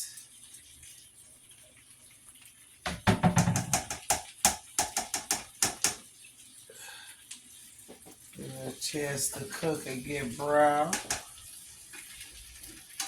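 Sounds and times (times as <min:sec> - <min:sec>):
utensil knocking on frying pan: 0:02.8 - 0:06.0, 0:10.8 - 0:11.3.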